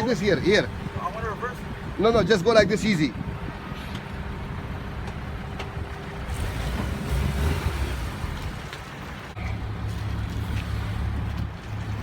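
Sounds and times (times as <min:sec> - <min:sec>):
vehicle engine at low revs: 0:03.3 - 0:12.0.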